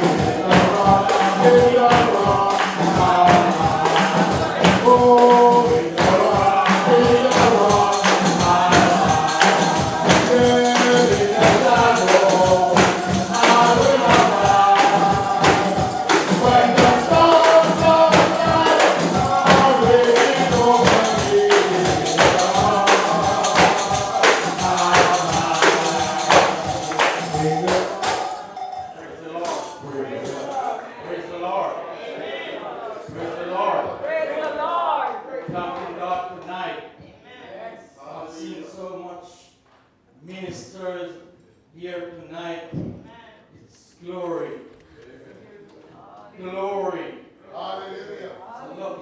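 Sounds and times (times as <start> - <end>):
tambourine beat: 0.0 - 30.8
group singing gospel: 0.0 - 39.4, 43.7 - 49.0.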